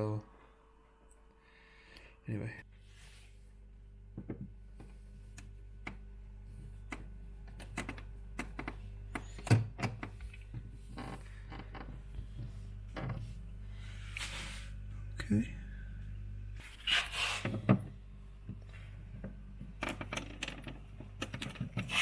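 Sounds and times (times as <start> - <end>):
fridge freezer humming: 3.1 - 22.0
plastic parts clicking and knocking: 19.2 - 22.0.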